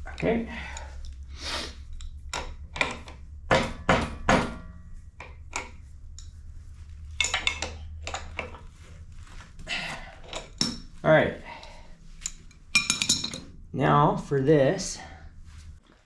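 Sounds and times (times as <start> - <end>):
low hum: 0.0 - 16.0
metal tools clanking: 7.1 - 8.7, 9.8 - 10.9, 11.5 - 13.6.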